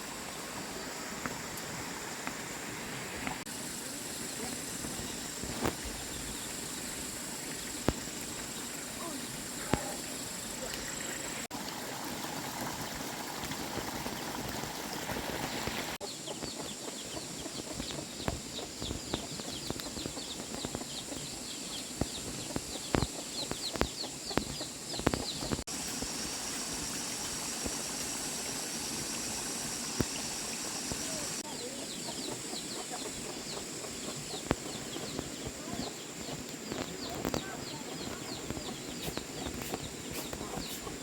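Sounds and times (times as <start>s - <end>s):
steady outdoor hiss: 0.0s - 41.0s
chicks peeping: 16.0s - 25.6s, 30.8s - 41.0s.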